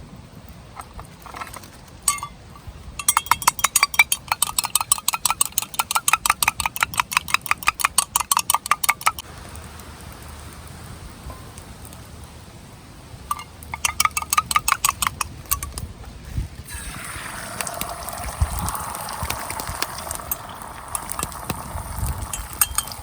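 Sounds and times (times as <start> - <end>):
utensil clinking on cookware: 2.1 - 2.4, 3.0 - 9.2, 13.3 - 15.8, 16.7 - 23.0.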